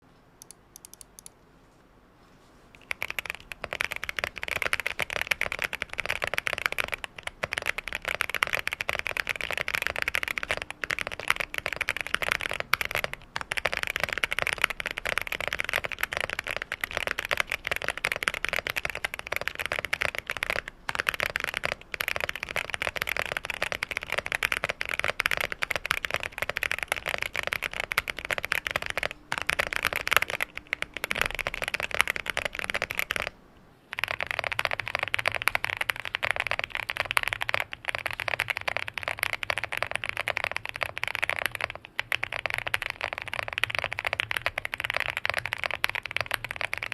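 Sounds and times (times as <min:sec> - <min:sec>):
fast typing on mechanical keyboard: 0:02.8 - 0:46.9.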